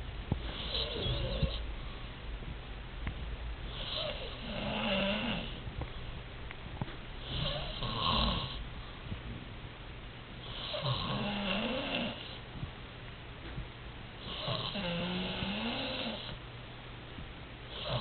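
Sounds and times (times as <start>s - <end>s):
person snoring: 0.5s - 1.6s, 3.7s - 5.6s, 7.2s - 8.6s, 10.5s - 12.4s, 14.2s - 16.4s, 17.7s - 18.0s.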